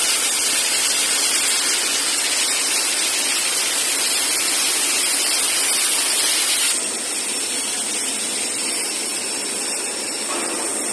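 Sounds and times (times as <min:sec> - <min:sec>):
cutting torch hissing: 0:00.0 - 0:08.2.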